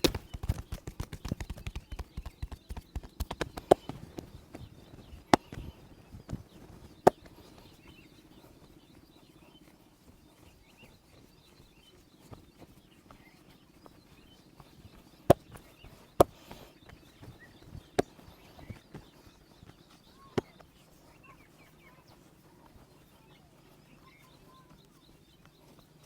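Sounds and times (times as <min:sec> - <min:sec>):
hands slapping on body: 0:00.0 - 0:04.3.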